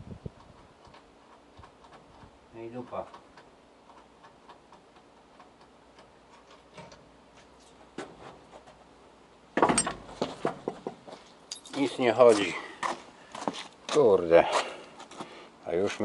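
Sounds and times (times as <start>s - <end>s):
faint irregular clicking: 0.4s - 7.0s.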